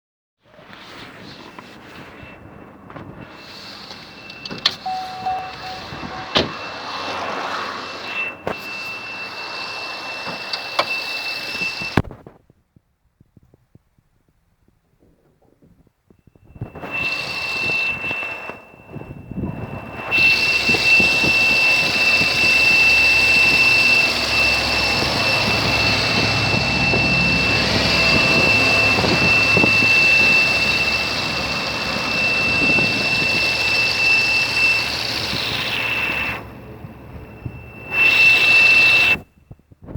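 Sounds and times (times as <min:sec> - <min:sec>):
high-pitched whistle: 0:01.4 - 0:12.1, 0:16.3 - 0:39.4
car engine running: 0:20.2 - 0:37.5.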